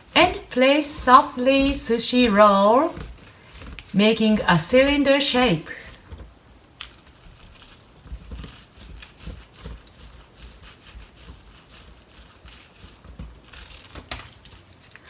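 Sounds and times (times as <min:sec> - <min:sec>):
bamboo mat clicking: 0:02.8 - 0:04.0, 0:05.8 - 0:11.4.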